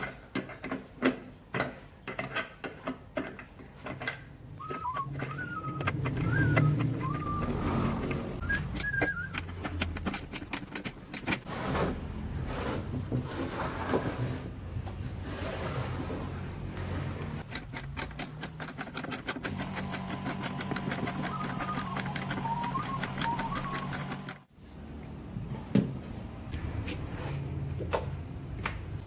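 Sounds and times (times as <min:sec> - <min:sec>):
small motor tool running: 0:18.9 - 0:24.4.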